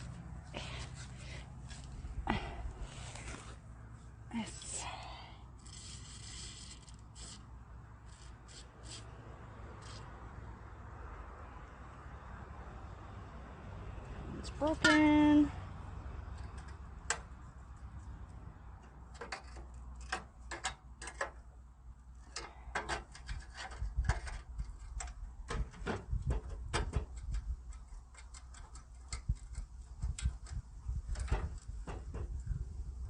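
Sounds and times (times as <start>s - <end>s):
steady low rumble: 0.0s - 8.4s.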